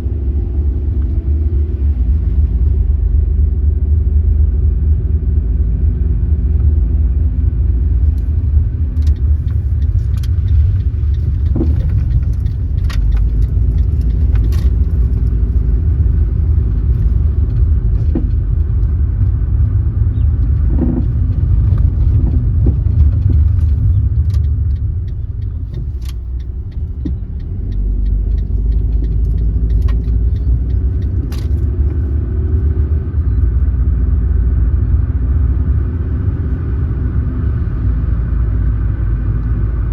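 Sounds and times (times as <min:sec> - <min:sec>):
car tyres and engine rumble: 0:00.0 - 0:39.9
small clicks and rattles: 0:08.0 - 0:16.2, 0:20.4 - 0:32.1.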